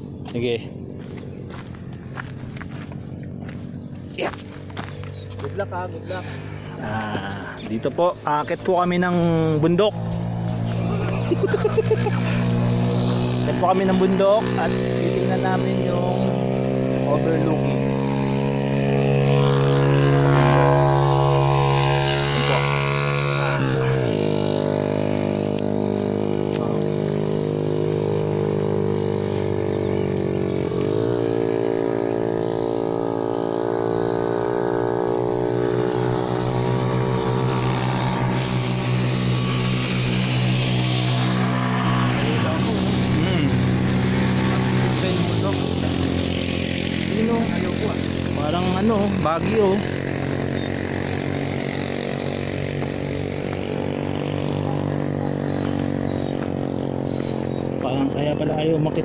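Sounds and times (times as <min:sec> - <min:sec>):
motor vehicle engine running: 0:00.0 - 0:59.0.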